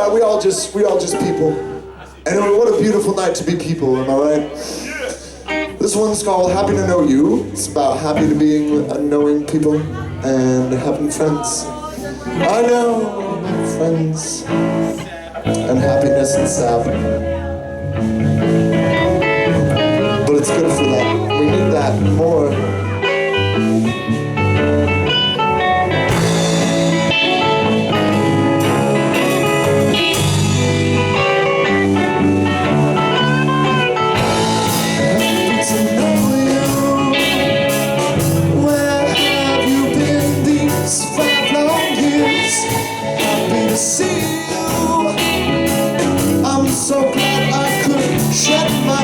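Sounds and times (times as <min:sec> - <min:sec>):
lead guitar: 0:00.0 - 0:49.0
rock band playing: 0:00.0 - 0:49.0
steady drum beat: 0:24.0 - 0:49.0.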